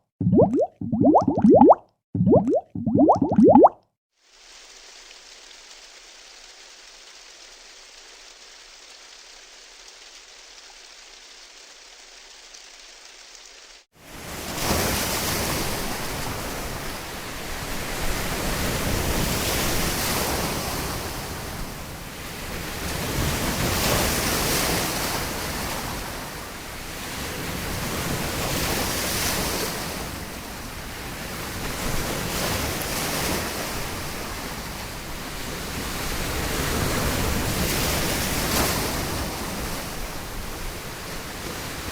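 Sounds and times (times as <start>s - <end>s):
steady hiss of rain: 4.2s - 14.2s, 33.9s - 41.9s.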